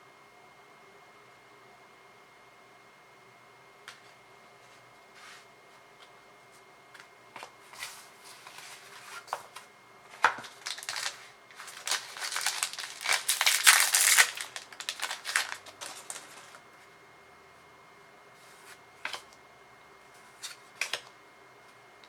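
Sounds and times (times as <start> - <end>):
foil wrapper crinkling: 10.2 - 16.6.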